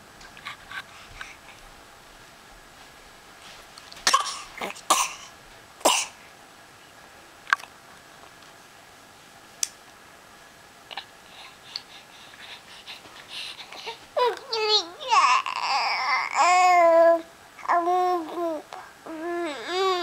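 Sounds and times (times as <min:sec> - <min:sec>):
baby fake coughing: 0:04.0 - 0:06.2.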